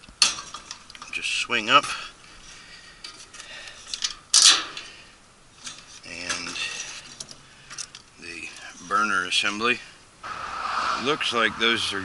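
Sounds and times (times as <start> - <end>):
light metallic clinks and rattles: 2.4 - 5.0, 5.6 - 8.8.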